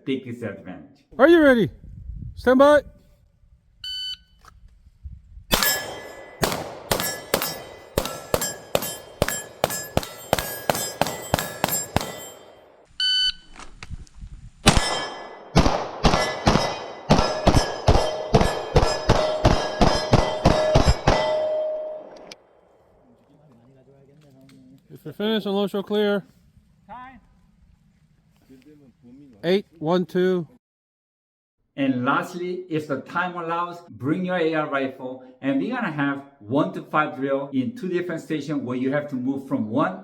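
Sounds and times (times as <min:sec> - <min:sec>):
shot timer beep: 0:03.8 - 0:04.4, 0:13.0 - 0:13.5
bullets hitting steel targets: 0:05.5 - 0:12.8, 0:14.7 - 0:21.9
pistol shots: 0:05.5 - 0:12.8, 0:14.6 - 0:21.8.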